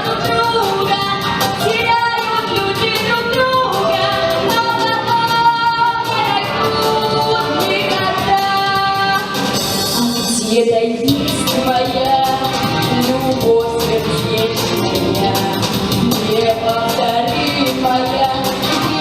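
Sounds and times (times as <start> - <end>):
musical accompaniment: 0.0 - 19.0.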